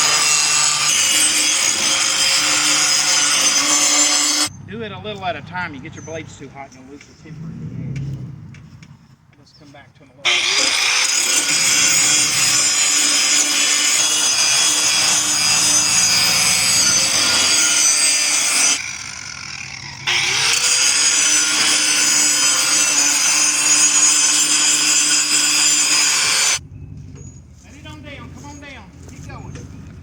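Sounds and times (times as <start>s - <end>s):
grinder grinding steel blade: 0.0s - 4.5s, 10.3s - 26.6s
grinder motor hum: 0.0s - 4.5s, 10.3s - 26.6s.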